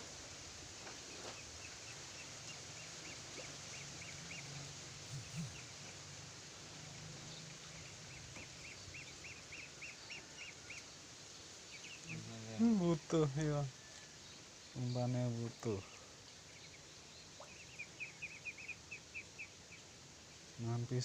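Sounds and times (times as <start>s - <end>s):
steady low hum: 0.0s - 10.6s
background hiss: 0.0s - 21.0s.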